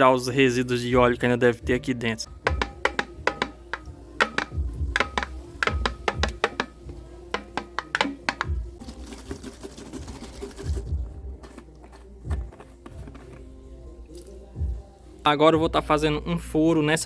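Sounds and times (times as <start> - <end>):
background music: 0.0 - 17.0
plastic bottle clattering: 2.4 - 8.8.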